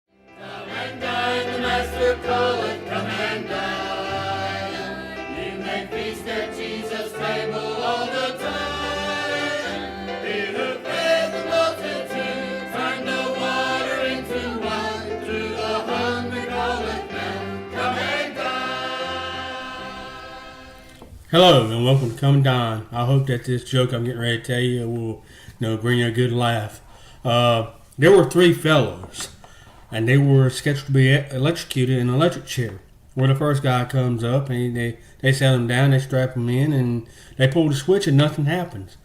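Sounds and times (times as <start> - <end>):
choir singing: 0.2 - 21.0.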